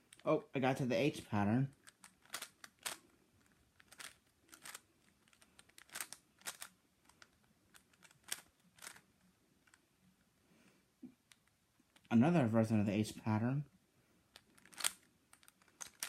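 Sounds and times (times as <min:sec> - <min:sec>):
plastic puzzle cube clicking: 0:01.7 - 0:09.8, 0:14.3 - 0:16.0.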